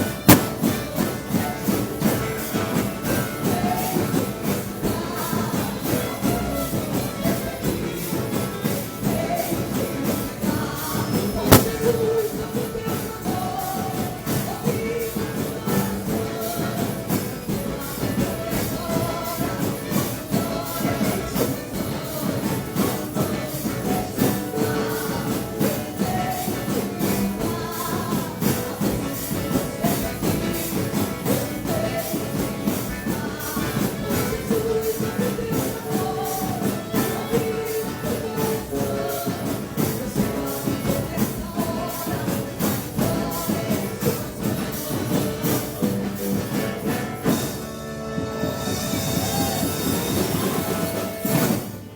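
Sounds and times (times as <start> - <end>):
drum kit playing: 0.0 - 51.9
gospel song: 0.0 - 51.9.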